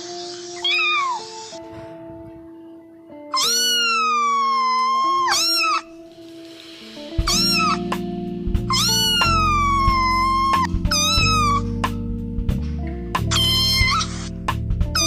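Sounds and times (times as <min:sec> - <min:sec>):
background music: 0:00.0 - 0:15.0
cat meowing: 0:00.3 - 0:01.6, 0:03.3 - 0:06.0, 0:07.2 - 0:08.0, 0:08.7 - 0:11.8, 0:13.3 - 0:14.3.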